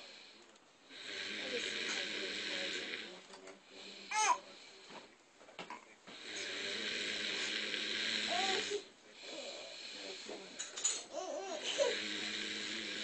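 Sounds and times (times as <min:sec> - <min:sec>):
soft breath: 0:00.0 - 0:05.2, 0:08.3 - 0:12.2
man snoring: 0:00.9 - 0:04.4, 0:06.1 - 0:10.6, 0:11.5 - 0:13.0.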